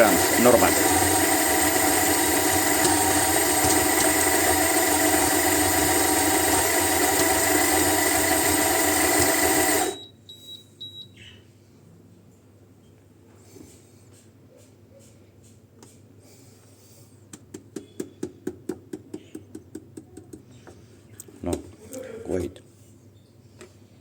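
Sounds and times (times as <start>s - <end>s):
coffee grinder motor grinding: 0.0s - 10.0s.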